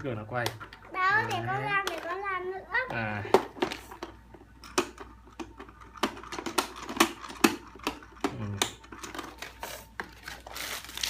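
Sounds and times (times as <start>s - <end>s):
plastic toy parts clicking: 4.7s - 9.4s.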